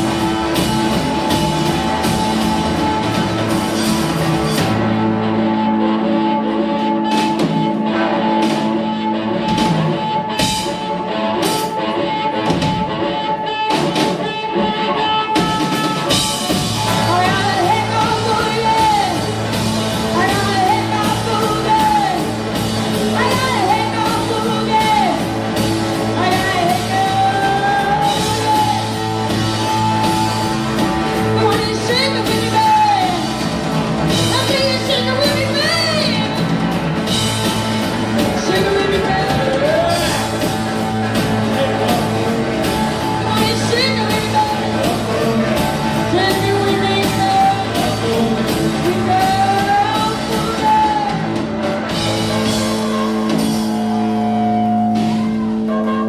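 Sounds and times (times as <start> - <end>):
blues-rock band playing: 0.0 - 56.0
drums: 0.0 - 56.0
person singing and shouting: 38.2 - 40.6.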